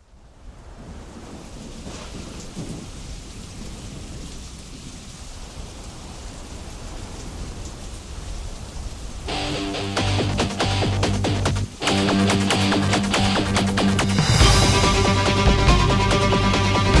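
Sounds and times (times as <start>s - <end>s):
rushing water with low rumble: 0.0s - 17.0s
plucked string music: 9.3s - 17.0s.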